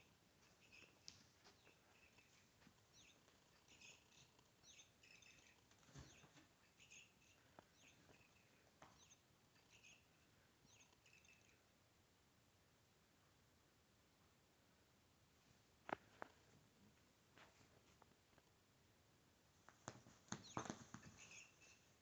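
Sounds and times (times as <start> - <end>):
cat toy bird-like chirps: 0.5 - 1.0, 1.6 - 11.6, 20.4 - 21.9.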